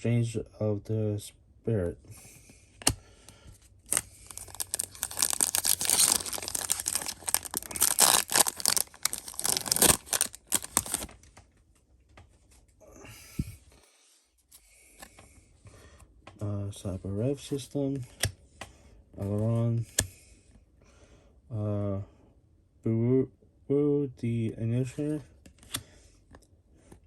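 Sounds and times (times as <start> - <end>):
foil wrapper tearing and crinkling: 3.9 - 11.1.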